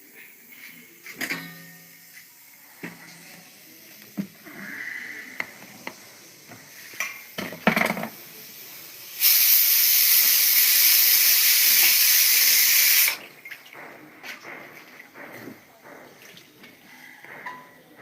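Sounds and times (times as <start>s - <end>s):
loud steady hiss: 0.0s - 13.3s.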